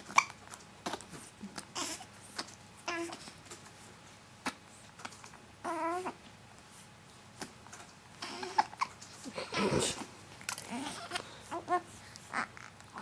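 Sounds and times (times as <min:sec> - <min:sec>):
babies cooing and squealing: 0:08.2 - 0:09.4, 0:10.5 - 0:13.0.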